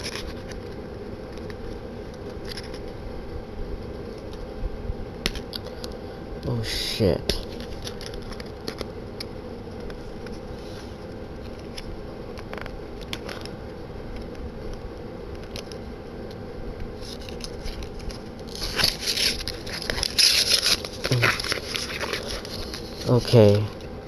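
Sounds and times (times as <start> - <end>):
steady low hum: 0.0 - 24.0
plastic scraping and crackling: 17.0 - 23.9.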